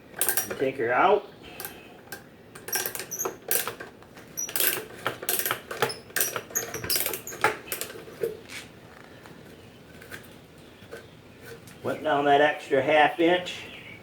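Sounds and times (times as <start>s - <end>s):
ratcheting hand brace clicking: 0.0s - 0.6s, 1.6s - 8.7s
short high squeaks: 4.3s - 8.7s.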